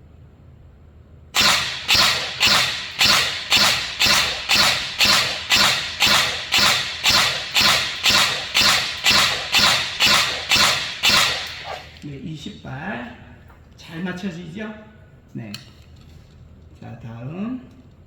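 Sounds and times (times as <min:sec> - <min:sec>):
airsoft gun firing single shots: 0:01.4 - 0:12.0.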